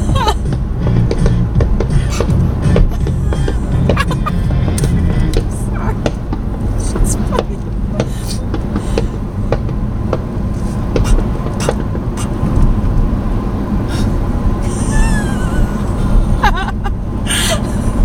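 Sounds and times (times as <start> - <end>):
sharp exhaust pops: 0.0 - 13.3
car engine rumbling: 0.0 - 18.0.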